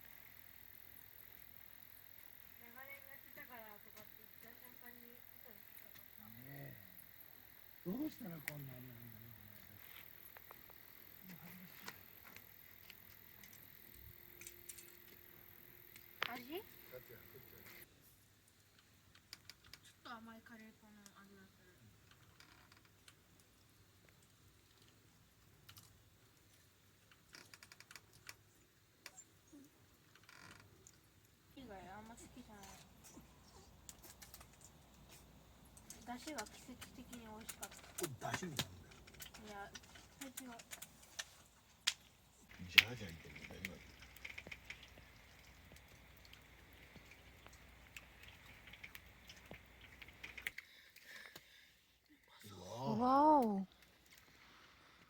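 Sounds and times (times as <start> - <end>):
small clicks and crackles: 0.0 - 52.3, 53.7 - 55.0.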